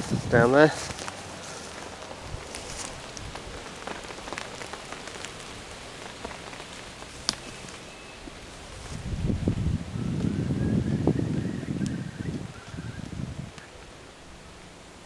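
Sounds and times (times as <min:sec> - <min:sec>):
steady rain in woodland: 0:00.0 - 0:15.0
raindrops ticking close by: 0:00.1 - 0:15.0.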